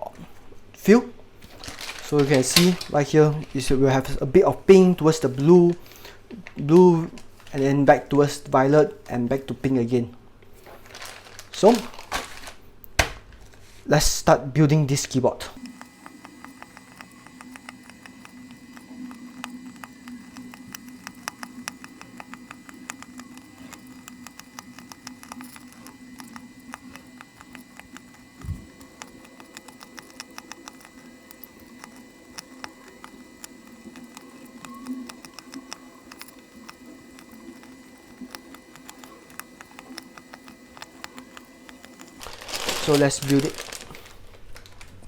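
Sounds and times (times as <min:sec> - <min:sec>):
steady low hum: 0:10.2 - 0:45.0.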